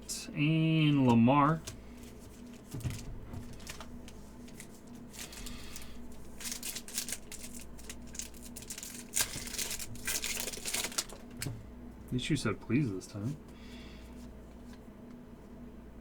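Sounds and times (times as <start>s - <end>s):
cards being shuffled: 0.9s - 11.4s
card wrappers crinkling: 0.9s - 11.5s.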